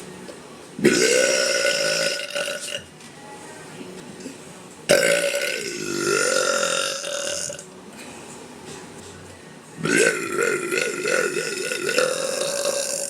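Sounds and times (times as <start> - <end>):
woman burping: 0.8 - 2.8, 4.9 - 7.6, 9.8 - 13.0.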